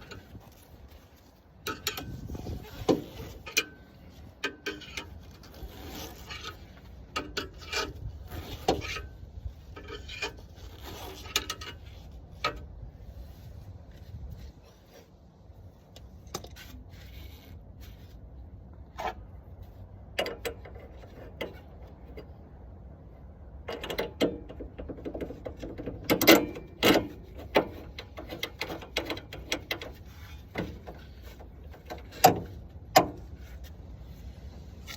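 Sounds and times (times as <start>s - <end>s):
car jack clicks and knocks: 23.6s - 30.0s.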